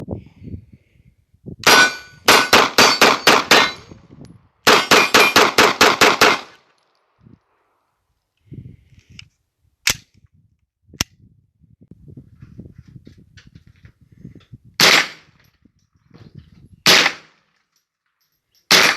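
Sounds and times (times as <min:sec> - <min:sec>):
rapid gunfire: 0:01.7 - 0:03.7, 0:04.7 - 0:06.6.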